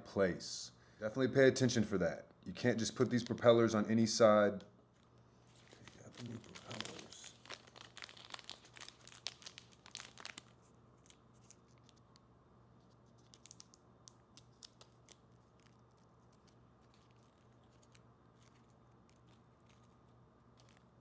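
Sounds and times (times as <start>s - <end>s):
plastic packaging crinkling: 2.9s - 3.5s, 4.9s - 12.2s, 12.8s - 21.0s.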